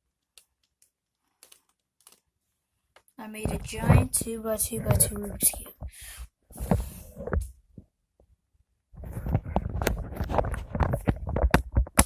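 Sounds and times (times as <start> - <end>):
plastic cubes clicking and clacking: 0.2 - 2.2.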